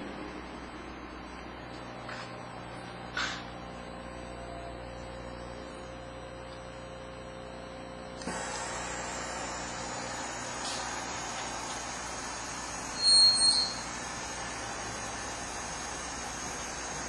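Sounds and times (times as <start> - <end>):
engraving machine humming: 0.0 - 17.0
hiss with high whine: 0.0 - 17.0.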